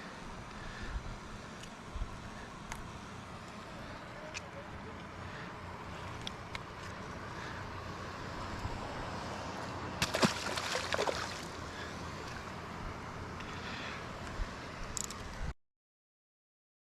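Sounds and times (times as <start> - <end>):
wind: 0.0 - 15.6
water sloshing and lapping: 10.0 - 12.5
water splashing: 10.0 - 12.5.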